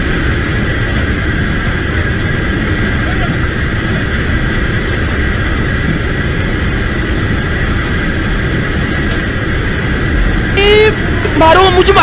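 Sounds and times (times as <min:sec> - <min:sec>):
constant hum: 0:00.0 - 0:12.0
road noise: 0:00.0 - 0:12.0
vehicle engine rumble: 0:00.0 - 0:12.0.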